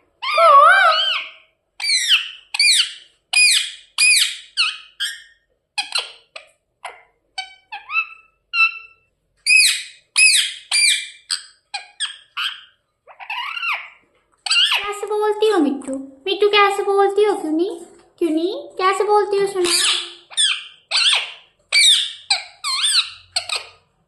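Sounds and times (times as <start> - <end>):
parrot chirping and squawking: 0.2 - 15.1, 19.5 - 23.9.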